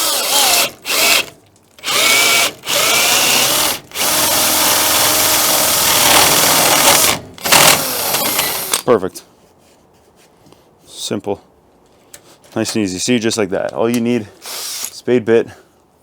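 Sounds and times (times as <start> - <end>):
power drill boring into wood: 0.0 - 8.8.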